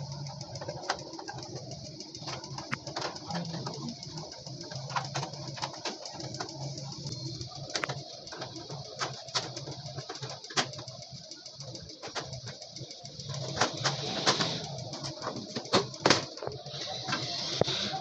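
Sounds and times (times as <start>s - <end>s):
sharp clicks and knocks: 0.0s - 17.8s
low cooing: 3.1s - 4.4s.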